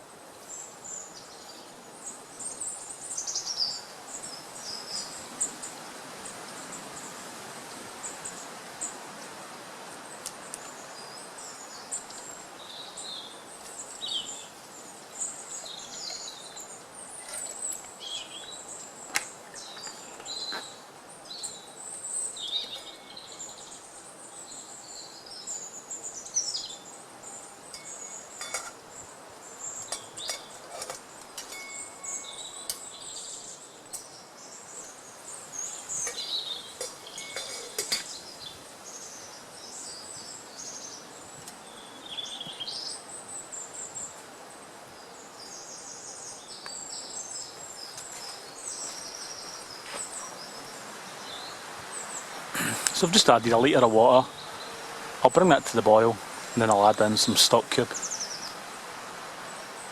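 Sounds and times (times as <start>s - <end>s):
birds singing and chirping: 10.6s - 44.2s, 44.9s - 58.7s.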